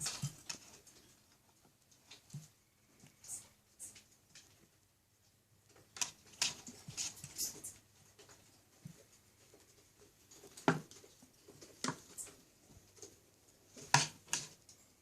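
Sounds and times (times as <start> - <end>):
pets scratching and scrabbling: 6.0 - 14.6.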